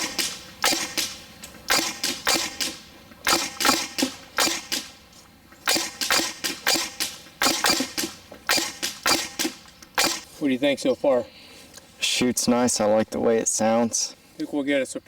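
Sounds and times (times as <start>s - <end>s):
airsoft rifle single shots: 0.0s - 4.9s, 5.7s - 10.2s.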